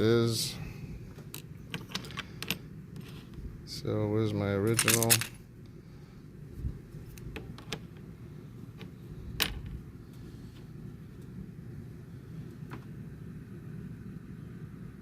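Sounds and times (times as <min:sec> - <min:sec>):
low background rumble: 0:00.0 - 0:15.0
small metal parts clicking: 0:01.3 - 0:03.1, 0:04.7 - 0:05.4.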